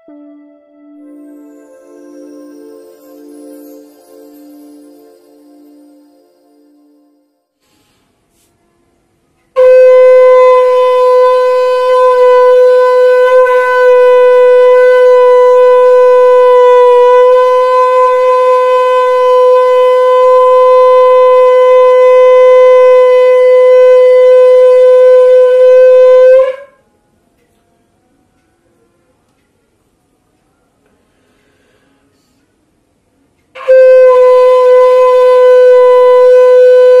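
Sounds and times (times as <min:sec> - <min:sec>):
conch shell blown: 0:00.0 - 0:07.8, 0:09.5 - 0:26.8, 0:33.5 - 0:37.0.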